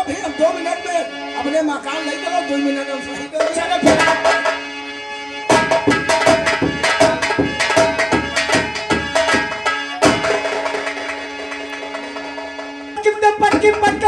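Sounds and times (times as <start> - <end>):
steady held notes: 0.0 - 14.0
fast drum strokes: 3.4 - 4.6, 5.5 - 14.0.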